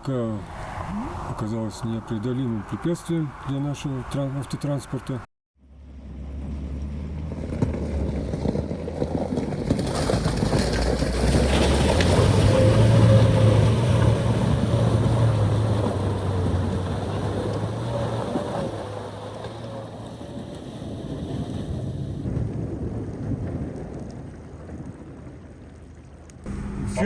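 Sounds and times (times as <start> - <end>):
vehicle engine working hard: 26.5 - 27.0.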